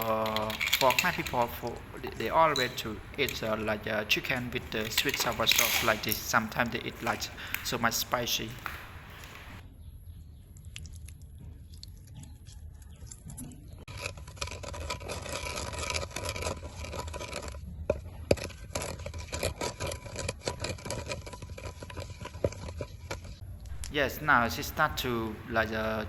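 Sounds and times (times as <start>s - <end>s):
utensil scraping and clicking: 0.0s - 9.6s, 11.8s - 26.0s.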